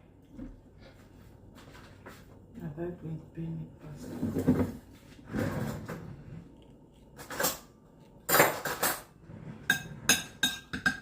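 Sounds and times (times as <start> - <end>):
spoon scraping in a pot: 8.3 - 10.8.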